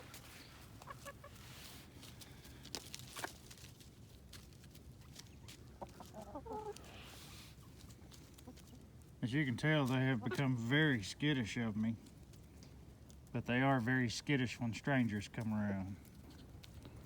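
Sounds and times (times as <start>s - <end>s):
chickens clucking softly: 0.1s - 2.1s, 2.7s - 11.0s, 15.4s - 17.0s.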